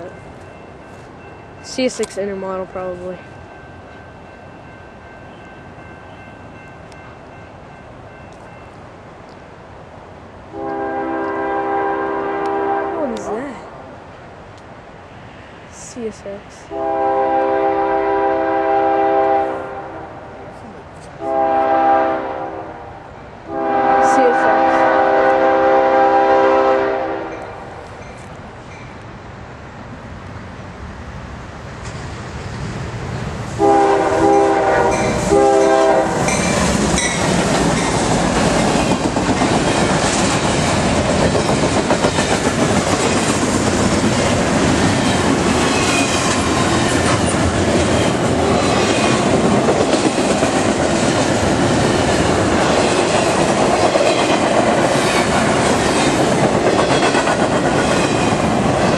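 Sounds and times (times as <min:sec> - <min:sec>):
train rumble: 0:00.0 - 0:58.9
locomotive air horn: 0:10.5 - 0:13.0, 0:16.7 - 0:20.2, 0:21.2 - 0:22.9, 0:23.5 - 0:27.6, 0:33.6 - 0:36.3
wheels clacking over rail joints: 0:34.3 - 0:58.9.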